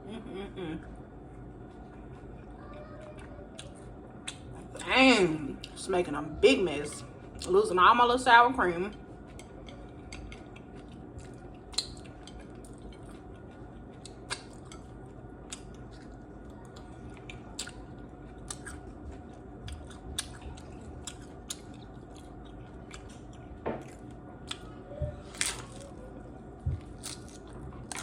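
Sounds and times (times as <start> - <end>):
chewing and biting food: 8.9 - 28.0.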